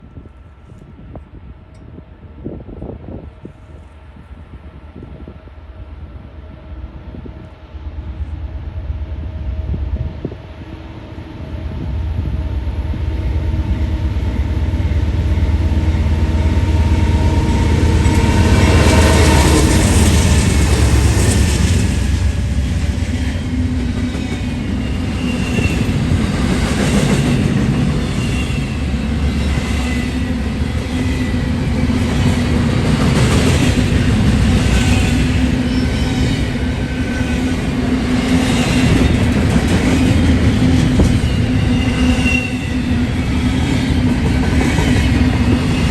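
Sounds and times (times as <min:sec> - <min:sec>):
diesel locomotive engine hum: 0:00.0 - 0:45.9
clickety-clack of train wheels: 0:15.4 - 0:45.9.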